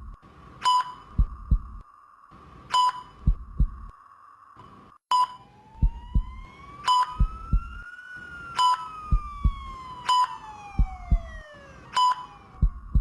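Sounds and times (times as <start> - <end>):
patient monitor beeping: 0.6 - 1.8, 2.7 - 3.9, 5.1 - 7.8, 8.6 - 13.0
heartbeat thumps: 1.1 - 1.8, 3.2 - 3.9, 5.8 - 7.8, 9.1 - 9.8, 10.7 - 11.5, 12.5 - 13.0
siren wail: 5.4 - 13.0.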